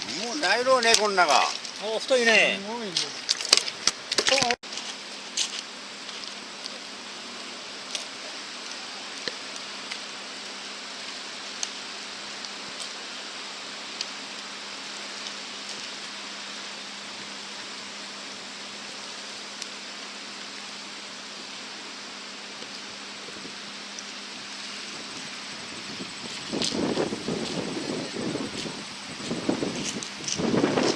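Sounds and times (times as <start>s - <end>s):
river rushing in flood: 0.0s - 4.6s.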